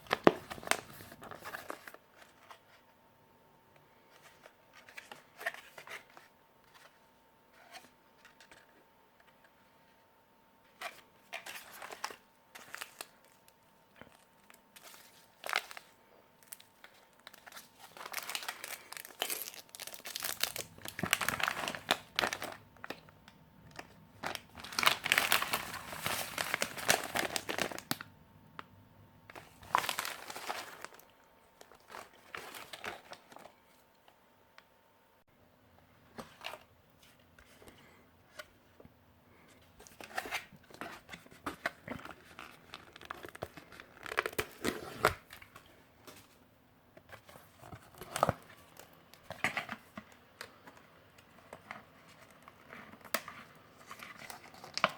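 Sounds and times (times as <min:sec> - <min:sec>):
plastic and foil packaging crinkling: 0:00.0 - 0:02.3, 0:10.9 - 0:23.1, 0:23.7 - 0:28.1, 0:29.3 - 0:33.6, 0:39.8 - 0:45.7, 0:47.3 - 0:54.9.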